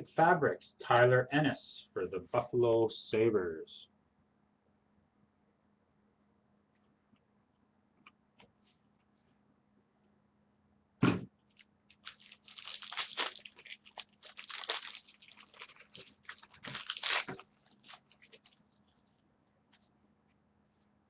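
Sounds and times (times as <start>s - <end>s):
sharp thump: 11.0s - 11.3s
wrapper crinkling while torn open: 11.5s - 19.2s.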